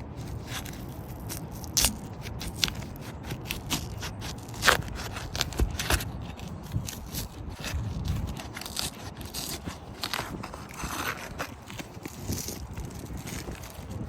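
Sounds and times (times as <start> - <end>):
shingle cracking and scraping: 0.0 - 14.0.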